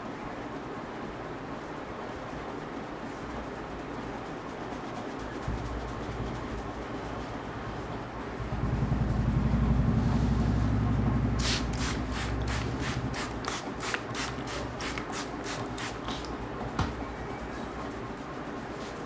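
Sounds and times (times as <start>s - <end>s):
low rumble: 5.4s - 13.5s
hands rubbing and patting head: 11.4s - 17.1s.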